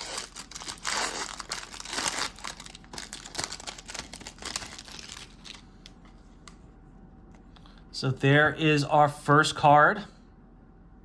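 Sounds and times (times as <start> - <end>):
cellophane wrapper crinkling: 0.0 - 6.1.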